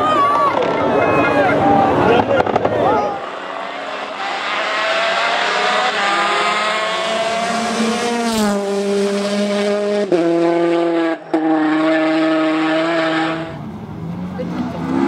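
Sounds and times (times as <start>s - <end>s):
rally car engine at high revs: 1.8s - 15.0s.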